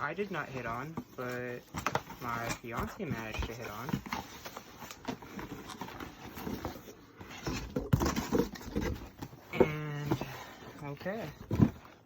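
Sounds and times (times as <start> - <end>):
cardboard box rustling: 0.0 - 12.0.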